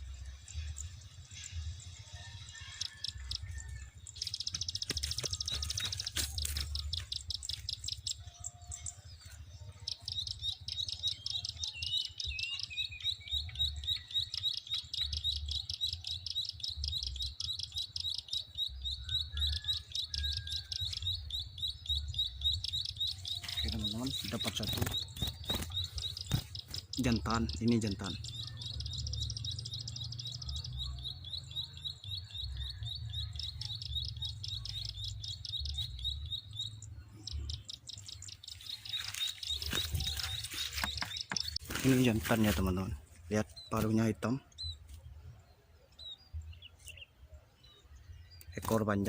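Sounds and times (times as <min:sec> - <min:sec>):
bird clicking calls: 0:04.1 - 0:08.2, 0:22.6 - 0:30.6, 0:37.5 - 0:42.5.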